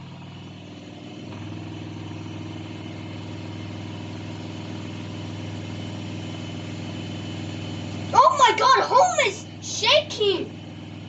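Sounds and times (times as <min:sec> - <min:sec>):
washing machine spinning: 0:00.0 - 0:11.0.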